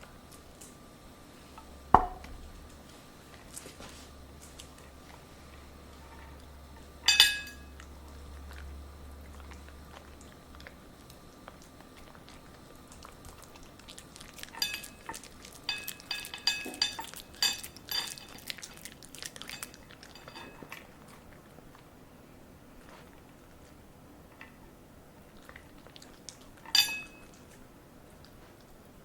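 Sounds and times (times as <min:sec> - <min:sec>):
clinks: 0:07.0 - 0:07.8, 0:19.6 - 0:20.8, 0:26.7 - 0:27.4
dog chewing: 0:07.6 - 0:22.0, 0:22.7 - 0:28.9.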